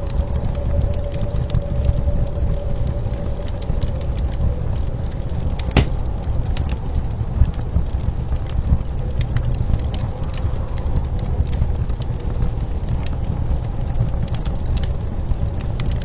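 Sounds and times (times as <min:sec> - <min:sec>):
wood fire crackling: 0:05.6 - 0:06.1.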